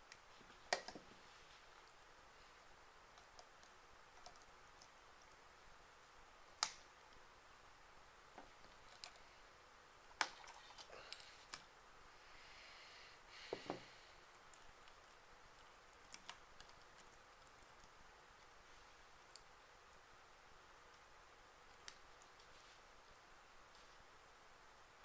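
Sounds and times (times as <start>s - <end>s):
small parts clicking and tapping: 0.0s - 1.1s, 3.1s - 5.4s, 8.4s - 9.3s.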